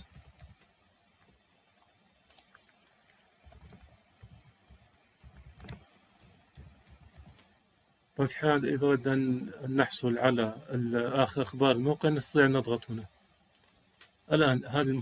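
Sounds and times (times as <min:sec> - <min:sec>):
faint keyboard typing: 0:00.0 - 0:07.6, 0:13.5 - 0:14.3.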